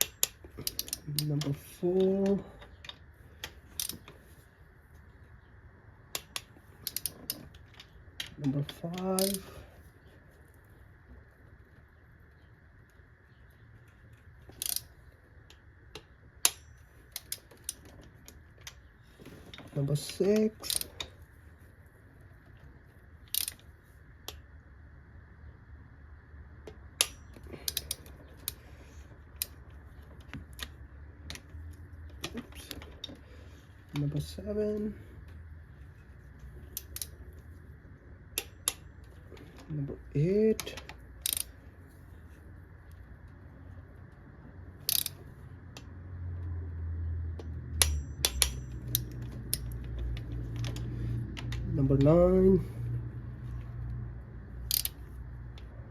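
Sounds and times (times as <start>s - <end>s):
socket wrench clicking: 0.0s - 4.2s, 6.1s - 9.5s, 14.5s - 15.0s, 15.9s - 18.8s, 19.6s - 21.1s, 23.2s - 23.7s, 26.7s - 28.6s, 36.6s - 37.2s, 38.4s - 38.9s, 40.6s - 41.6s, 44.8s - 45.9s, 47.4s - 52.1s, 54.6s - 55.7s
low steady hum: 0.0s - 55.9s.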